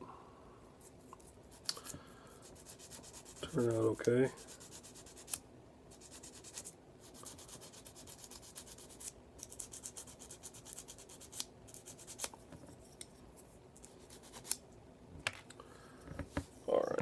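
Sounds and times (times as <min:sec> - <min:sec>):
sanding stick rubbing on plastic: 0:02.4 - 0:05.4, 0:06.0 - 0:12.3.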